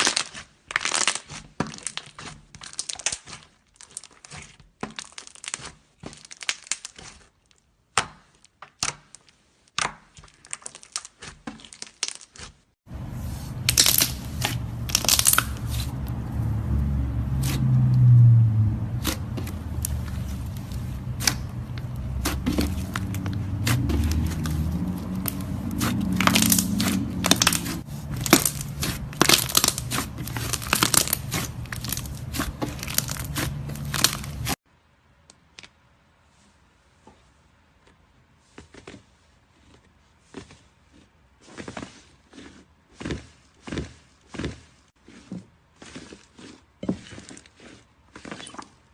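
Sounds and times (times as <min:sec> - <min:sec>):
slime crackling and popping: 0:00.0 - 0:12.6, 0:13.6 - 0:16.2, 0:19.0 - 0:34.6.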